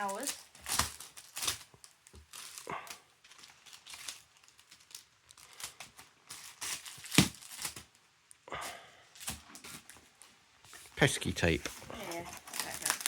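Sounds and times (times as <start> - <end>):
paper and tape crinkling and tearing: 0.0 - 13.0.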